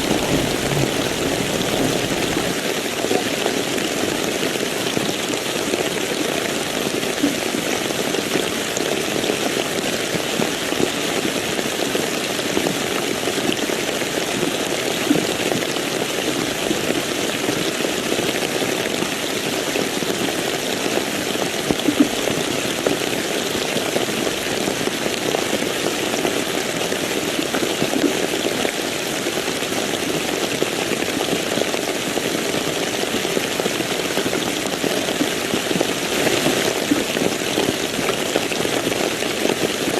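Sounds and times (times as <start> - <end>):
rain hissing: 0.0 - 2.6
raindrops splashing: 0.0 - 2.6.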